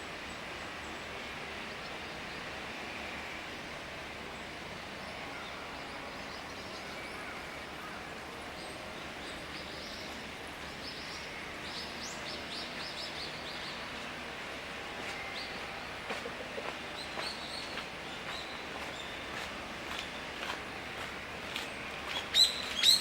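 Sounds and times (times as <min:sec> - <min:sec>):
steady background hiss: 0:00.0 - 0:23.0.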